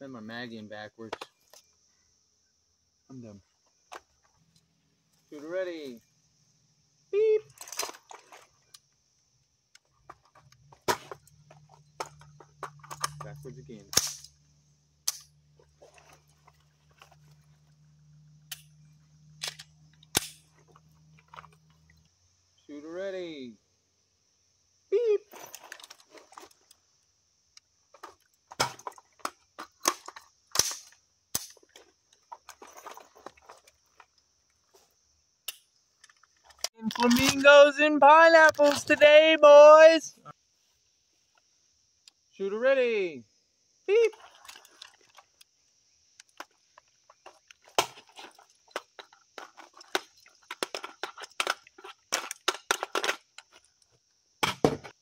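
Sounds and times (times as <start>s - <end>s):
pistol being drawn: 13.9s - 14.3s, 15.1s - 15.3s, 19.4s - 20.5s.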